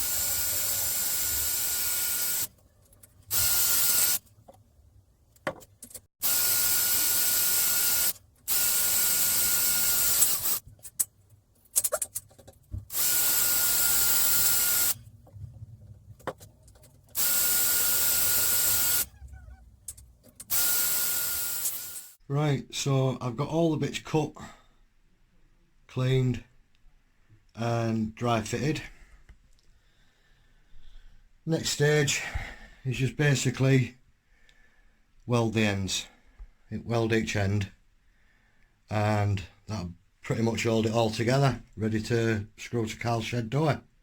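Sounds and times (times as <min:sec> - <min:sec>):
electric drill motor whining: 0:00.0 - 0:02.5, 0:03.3 - 0:04.2, 0:06.2 - 0:10.6, 0:12.9 - 0:15.0, 0:17.2 - 0:19.1, 0:20.5 - 0:22.2.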